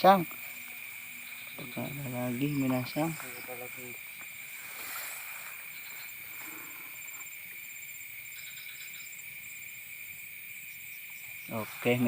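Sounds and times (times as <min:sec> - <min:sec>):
faint hiss: 0:00.0 - 0:12.0
insects droning: 0:00.0 - 0:12.0
rapid insect chirps: 0:00.0 - 0:12.0.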